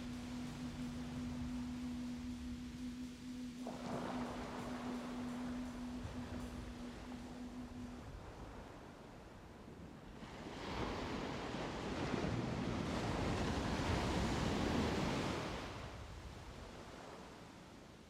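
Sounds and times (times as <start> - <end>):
ocean wave rushing: 0.0 - 8.9.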